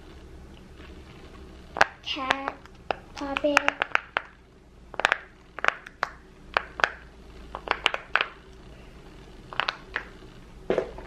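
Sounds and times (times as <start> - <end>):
fidget toy bubbles popping: 1.8 - 8.4.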